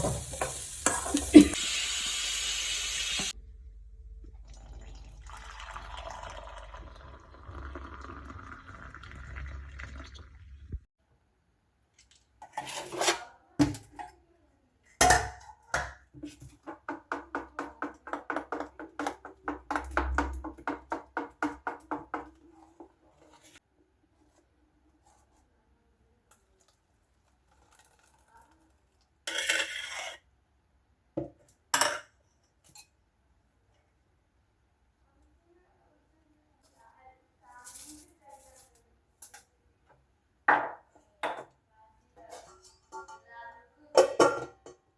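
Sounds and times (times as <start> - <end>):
dishes and cutlery clattering: 42.2 - 43.3, 44.0 - 44.9.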